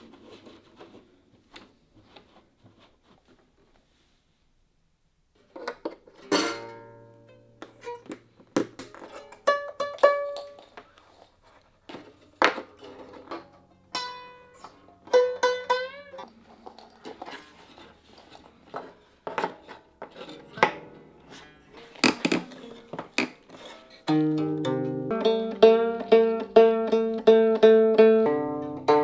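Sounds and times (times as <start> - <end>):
plucked zither strings: 6.2 - 8.1, 9.0 - 10.7, 12.8 - 16.4, 20.2 - 29.0.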